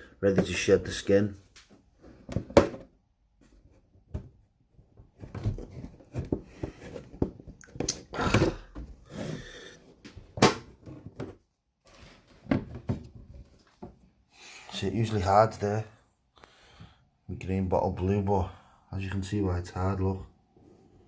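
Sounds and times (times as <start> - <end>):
handling knocks and clicks: 4.1 - 9.0.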